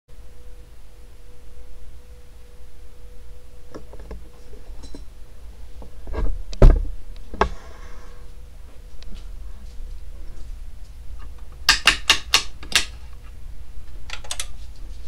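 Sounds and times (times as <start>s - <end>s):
ceiling fan motor hum: 0.1s - 15.0s
sharp clicks and knocks: 11.2s - 13.0s.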